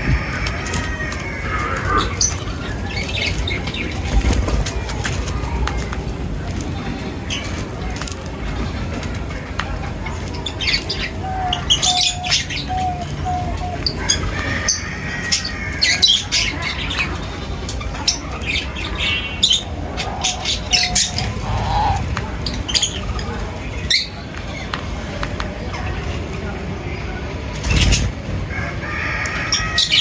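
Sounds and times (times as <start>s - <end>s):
birds chirping and squawking: 0.0s - 5.9s, 10.2s - 24.6s, 27.6s - 30.0s
steady low rumble: 19.3s - 23.8s.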